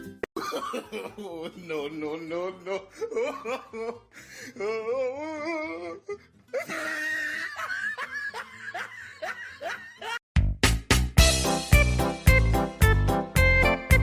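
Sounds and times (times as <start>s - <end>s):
music: 0.0s - 0.3s, 10.4s - 14.0s
person laughing hard: 0.4s - 1.9s, 2.5s - 10.2s.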